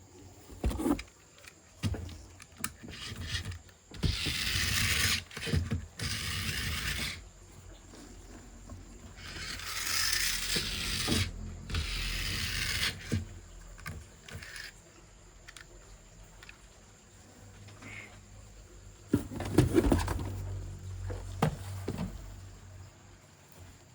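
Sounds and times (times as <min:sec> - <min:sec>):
rubbing and handling noise: 0:00.3 - 0:14.8, 0:19.0 - 0:22.5
rasping scrapes: 0:02.6 - 0:07.3, 0:09.1 - 0:14.7.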